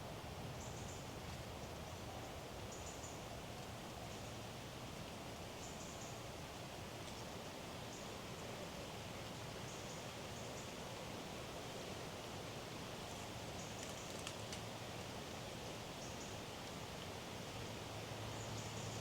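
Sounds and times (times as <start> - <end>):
soft rustling hiss: 0.0 - 19.0.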